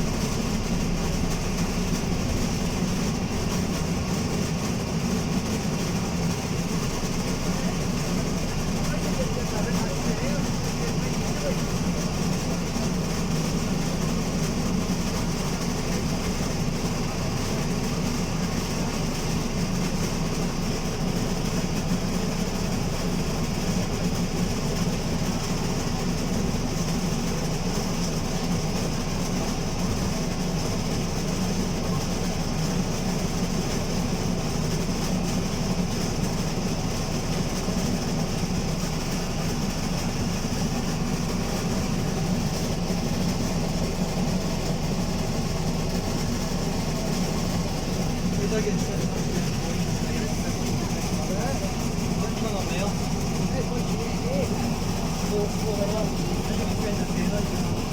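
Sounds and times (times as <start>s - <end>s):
bus engine rumbling: 0.0s - 14.9s, 35.2s - 57.9s.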